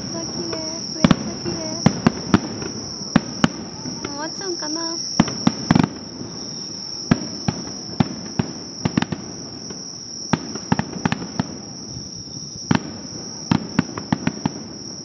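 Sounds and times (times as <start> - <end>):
fireworks bangs: 0.0 - 15.0
insect trill: 0.0 - 15.0.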